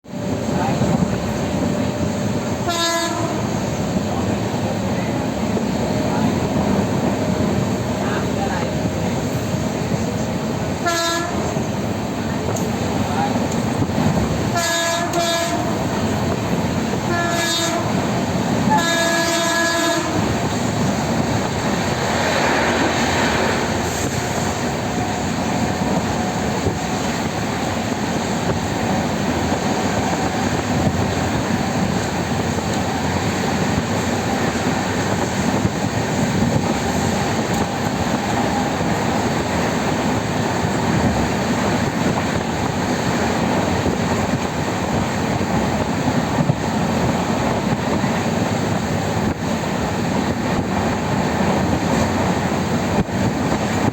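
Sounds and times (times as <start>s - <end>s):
train running on rails: 0.0s - 53.9s
train horn blasts: 2.6s - 3.6s, 10.8s - 11.7s, 14.5s - 16.1s, 16.9s - 20.6s.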